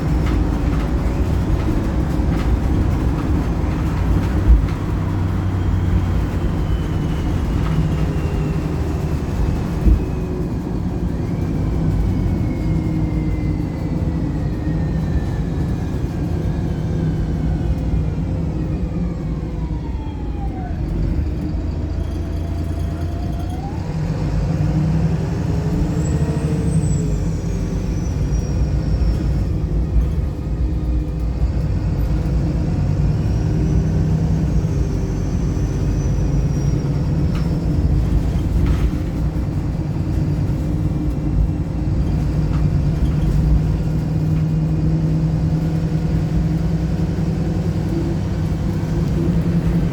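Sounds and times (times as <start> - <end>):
bus engine drone: 0.0 - 49.9
drivetrain whine: 0.0 - 49.9.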